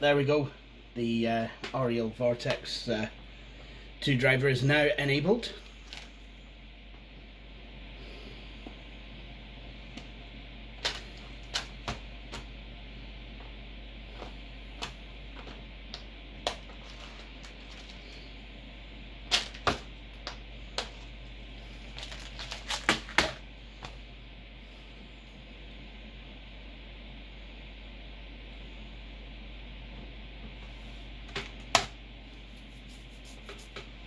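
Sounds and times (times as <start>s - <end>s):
low mains hum: 0.0s - 34.0s
steady hiss: 32.3s - 34.0s.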